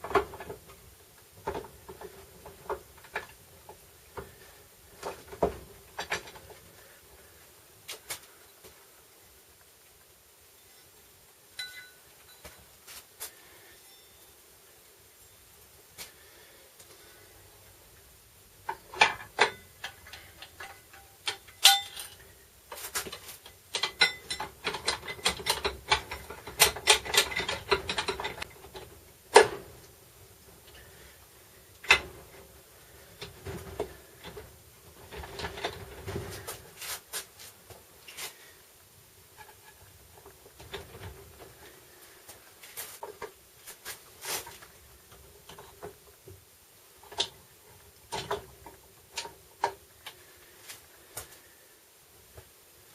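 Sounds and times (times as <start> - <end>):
hand tools clinking on metal: 11.6 - 12.5, 19.0 - 22.2, 23.7 - 28.5.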